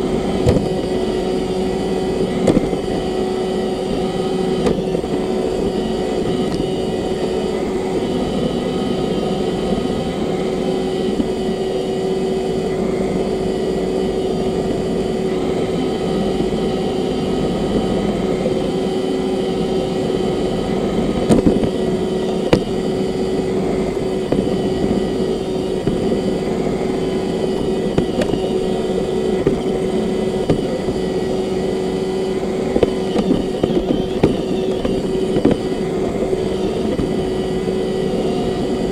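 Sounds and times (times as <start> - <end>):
robot vacuum humming: 0.0 - 38.9.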